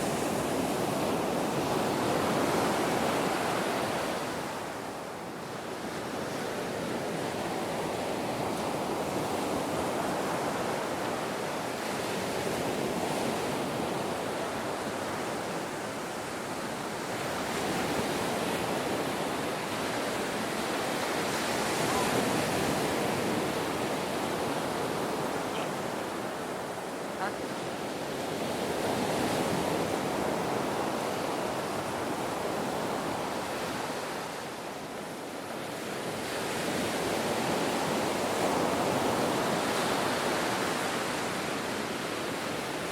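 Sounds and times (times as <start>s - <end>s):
waves breaking on a beach: 0.0s - 42.9s.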